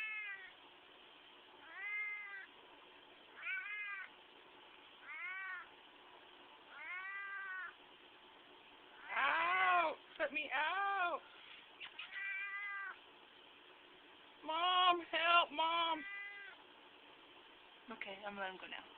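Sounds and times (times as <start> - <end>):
cat meowing: 0.0 - 0.6, 1.6 - 2.5, 3.4 - 4.1, 5.0 - 5.7, 6.7 - 7.8, 11.9 - 13.0, 15.8 - 16.6.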